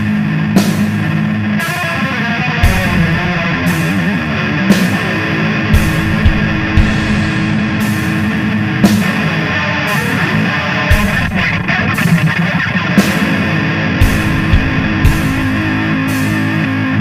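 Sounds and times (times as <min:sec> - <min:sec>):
distorted electric guitar: 0:00.0 - 0:17.0
cymbal crashes: 0:00.6 - 0:16.8.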